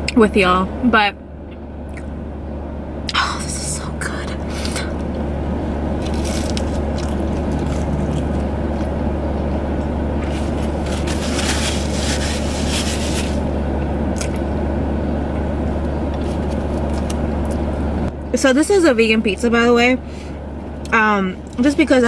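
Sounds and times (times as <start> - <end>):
car engine idling: 0.0 - 22.0
rustling and crackling: 6.0 - 13.6.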